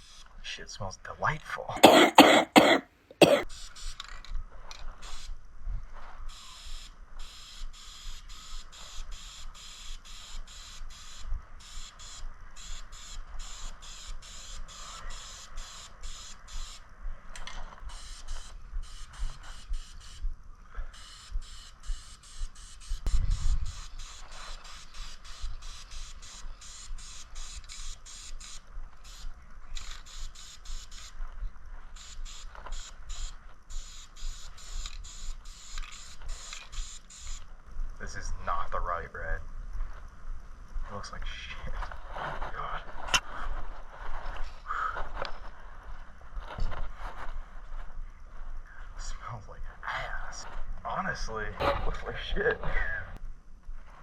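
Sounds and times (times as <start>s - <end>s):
aerosol can spraying hiss: 21.0s - 29.3s, 32.0s - 37.4s.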